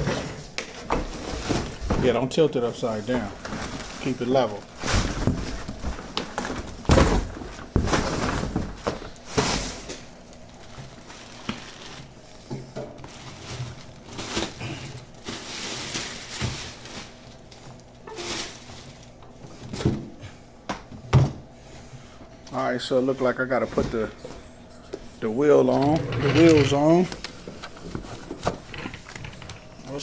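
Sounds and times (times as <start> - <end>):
packing material rustling: 1.1 - 12.3, 13.0 - 19.2, 25.3 - 30.0
thumps and knocks of handling: 4.8 - 10.0.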